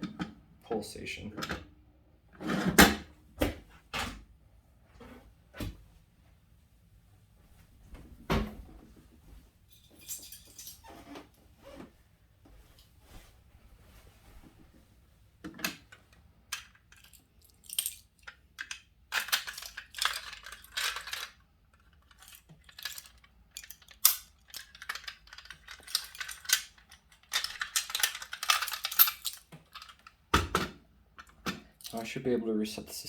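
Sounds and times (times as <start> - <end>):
keys jangling: 9.7 - 10.8, 16.6 - 30.1
metallic clicks and scrapes: 15.5 - 30.1.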